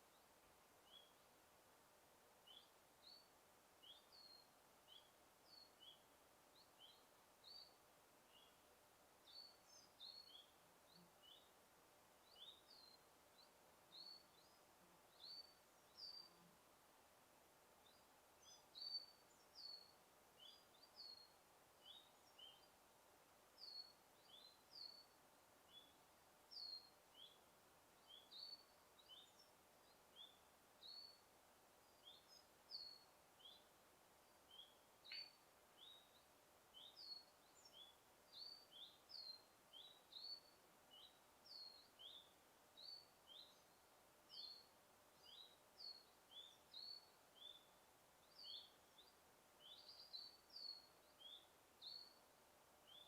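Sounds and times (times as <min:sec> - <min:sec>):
soft background hiss: 0:00.0 - 0:53.0
bird chirps: 0:31.8 - 0:52.2.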